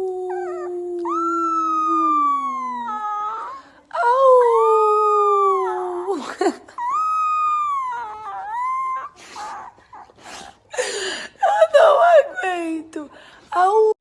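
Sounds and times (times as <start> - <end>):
dog howling: 0.0 - 6.2, 6.8 - 10.1.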